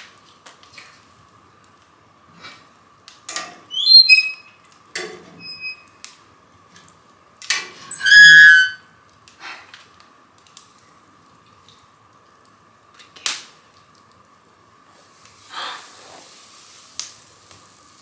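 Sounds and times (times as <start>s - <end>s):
wood fire crackling and popping: 0.0s - 8.0s, 9.0s - 18.0s
high whistle of escaping gas: 3.7s - 4.5s, 7.9s - 8.9s.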